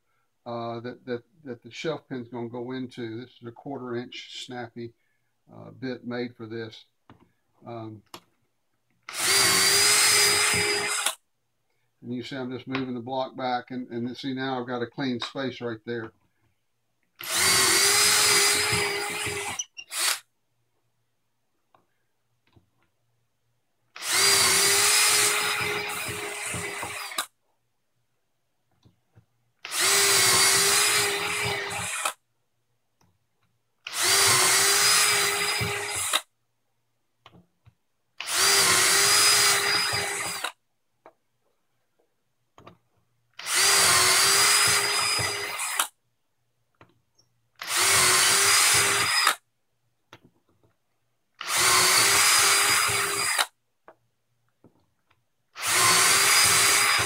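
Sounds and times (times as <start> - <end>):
power drill boring into wood: 9.1 - 11.2, 17.2 - 20.3, 24.0 - 27.3, 29.6 - 32.2, 33.8 - 36.3, 38.2 - 40.6, 43.4 - 46.0, 47.6 - 49.4, 51.4 - 53.6, 55.6 - 57.0.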